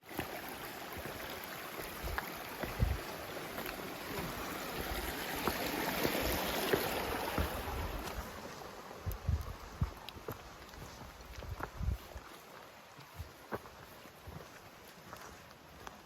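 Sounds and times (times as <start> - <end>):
creek rushing over rocks: 0.0 - 16.0
dull low thumps: 2.0 - 3.0, 9.0 - 10.0, 11.4 - 12.0.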